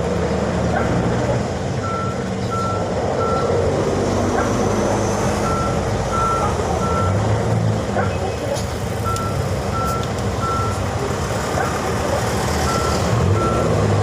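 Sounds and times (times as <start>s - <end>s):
truck engine running: 0.0s - 14.0s
truck reversing alarm beeping: 1.8s - 3.6s, 4.2s - 11.1s, 12.5s - 14.0s.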